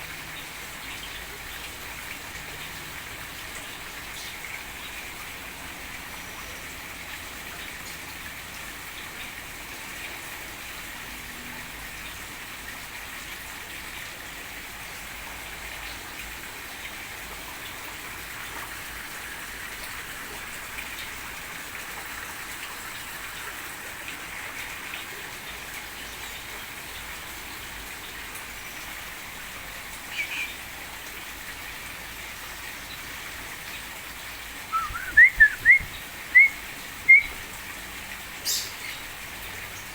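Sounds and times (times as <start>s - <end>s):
small birds twittering: 30.1s - 30.6s, 34.8s - 37.4s, 38.4s - 39.1s.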